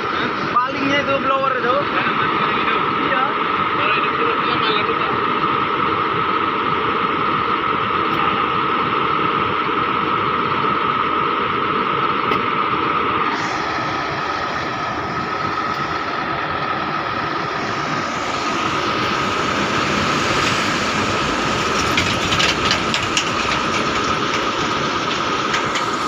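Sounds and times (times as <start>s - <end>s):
heavy vehicle rumble with whine: 0.0s - 26.0s
rattling clicks: 21.7s - 26.0s.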